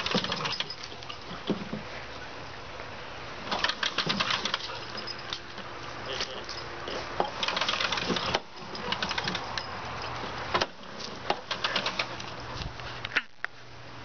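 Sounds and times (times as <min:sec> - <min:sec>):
lawnmower running: 0:00.0 - 0:01.1, 0:03.5 - 0:05.3, 0:07.1 - 0:12.3
sharp clicks and rattles: 0:00.0 - 0:01.6, 0:03.5 - 0:05.6, 0:06.5 - 0:12.4.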